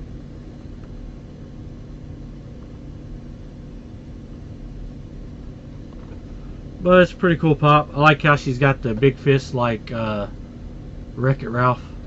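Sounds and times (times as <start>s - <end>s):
faint hum: 0.0s - 12.0s
low background rumble and hiss: 0.0s - 12.0s.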